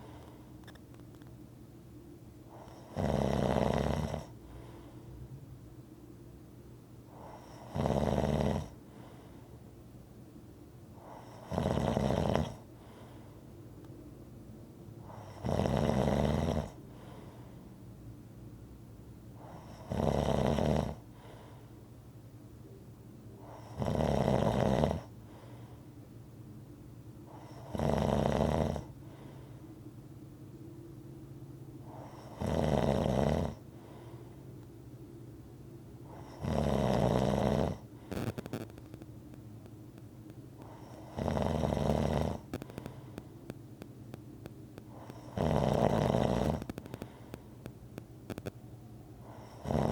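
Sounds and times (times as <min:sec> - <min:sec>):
person snoring: 0:07.2 - 0:08.8, 0:11.0 - 0:12.6, 0:27.3 - 0:28.9, 0:31.9 - 0:33.6, 0:36.1 - 0:38.3, 0:40.6 - 0:43.0, 0:44.9 - 0:47.3, 0:49.2 - 0:49.9.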